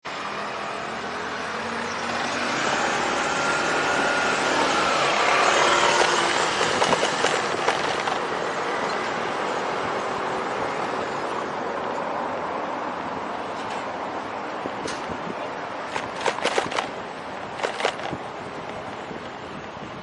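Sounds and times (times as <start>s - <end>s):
city street traffic: 0.0s - 20.0s
vehicle passing: 0.2s - 9.4s, 15.8s - 19.2s
sharp clicks and rattles: 5.7s - 8.3s, 15.9s - 18.9s.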